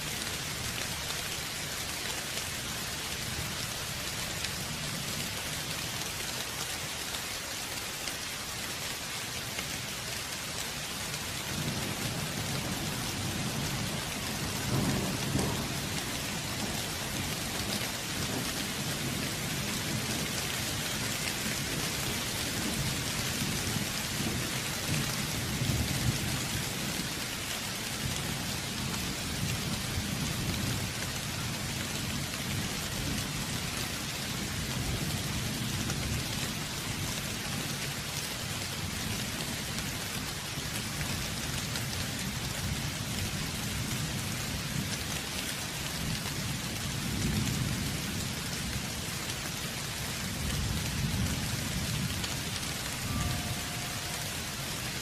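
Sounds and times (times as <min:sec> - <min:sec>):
heavy rain falling: 0:00.0 - 0:55.0
rolling thunder: 0:12.5 - 0:16.0.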